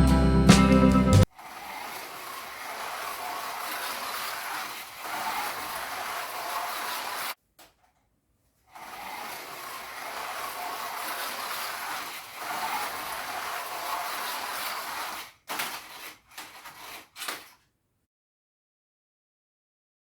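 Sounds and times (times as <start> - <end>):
slot cars running on track: 1.5 - 7.4, 8.8 - 16.2.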